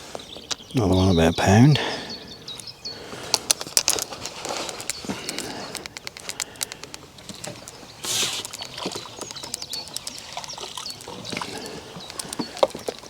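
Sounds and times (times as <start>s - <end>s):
bird chirps: 0.0s - 3.2s, 7.3s - 12.9s
fishing tackle clicking: 4.8s - 7.8s.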